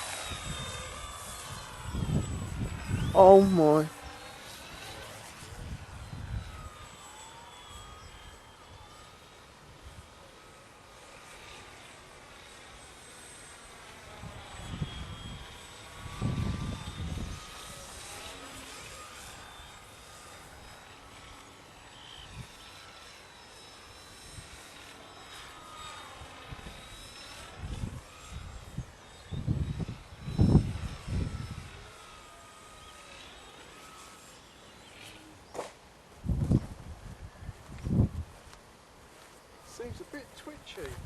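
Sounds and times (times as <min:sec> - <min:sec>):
wind gusts on microphone: 0:00.0 - 0:04.0, 0:04.8 - 0:06.8, 0:14.2 - 0:18.2, 0:27.5 - 0:32.0, 0:36.2 - 0:38.5, 0:40.8 - 0:41.0
model plane motor whine: 0:00.0 - 0:41.0.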